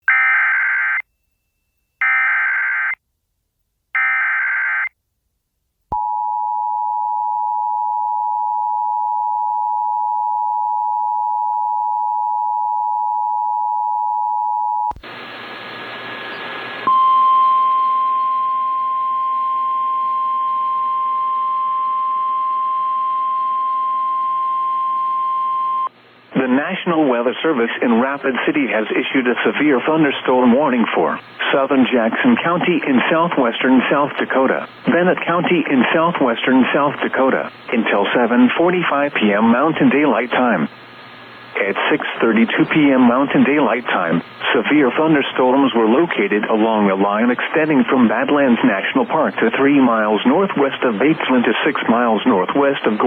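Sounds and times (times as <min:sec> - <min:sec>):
steady warning alarm tone: 0:00.1 - 0:01.1, 0:02.0 - 0:03.0, 0:04.0 - 0:04.9
radio static: 0:14.9 - 0:16.9, 0:26.3 - 0:53.0
hiss and hum: 0:14.9 - 0:20.9.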